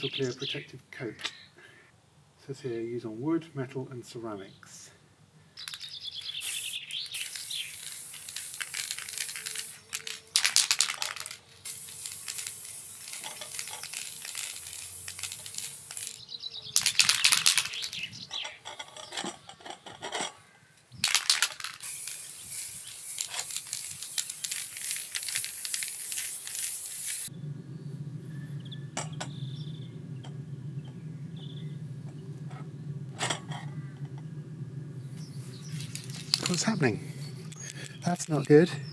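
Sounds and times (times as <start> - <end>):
aerosol can rattling: 5.6 - 20.4, 21.0 - 27.3, 35.6 - 36.9
aerosol can spraying: 6.3 - 16.2, 21.4 - 27.3.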